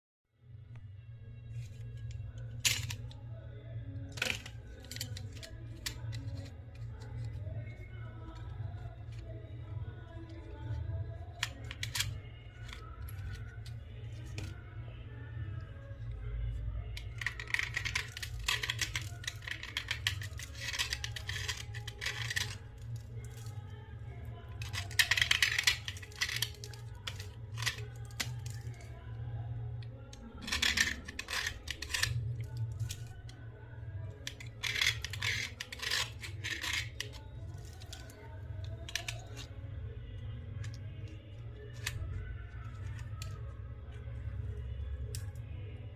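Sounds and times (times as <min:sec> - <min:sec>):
slate pencils crunching and snapping: 0:01.6 - 0:03.2, 0:04.1 - 0:09.3, 0:10.0 - 0:14.5, 0:17.0 - 0:23.6, 0:24.3 - 0:29.1, 0:30.0 - 0:33.4, 0:34.1 - 0:39.6, 0:40.6 - 0:43.5.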